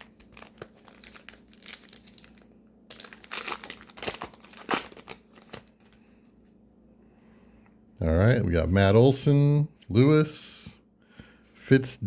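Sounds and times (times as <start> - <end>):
foil wrapper tearing and crinkling: 0.0 - 6.0.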